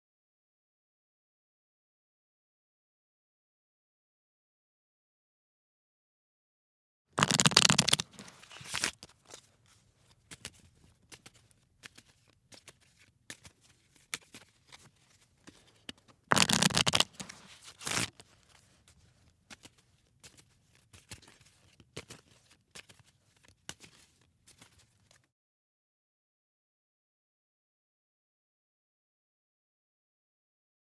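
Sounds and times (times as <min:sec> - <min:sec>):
cards clicking and tapping: 0:07.2 - 0:09.5, 0:10.2 - 0:18.6, 0:19.5 - 0:25.2
playing cards shuffling: 0:07.2 - 0:25.3.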